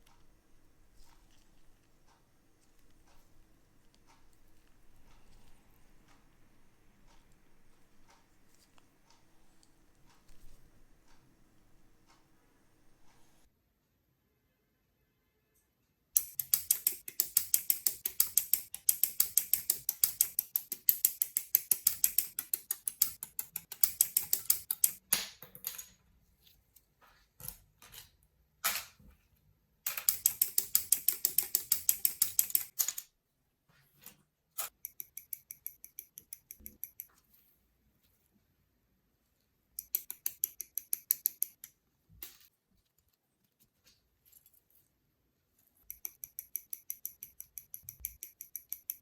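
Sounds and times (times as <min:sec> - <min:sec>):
plastic parts clicking: 0:16.2 - 0:26.0, 0:29.9 - 0:33.1.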